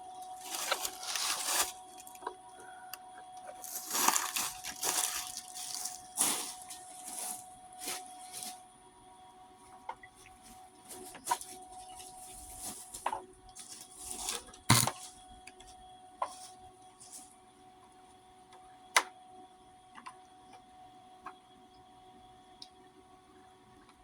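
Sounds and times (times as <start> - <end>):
faint steady whine: 0.0 - 10.6.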